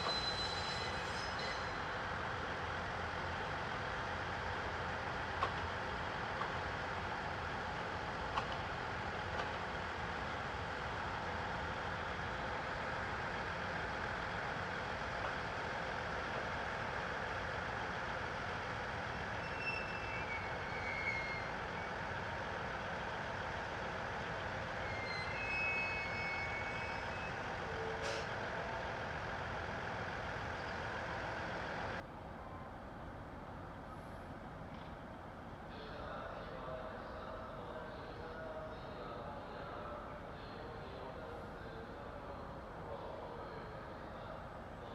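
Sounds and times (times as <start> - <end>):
train mechanical running noise: 0.0 - 44.9.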